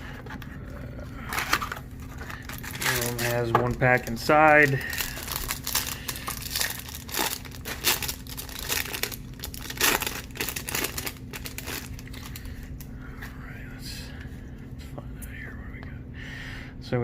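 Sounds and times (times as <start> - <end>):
card pack wrapper crinkling and tearing: 0.2 - 12.9.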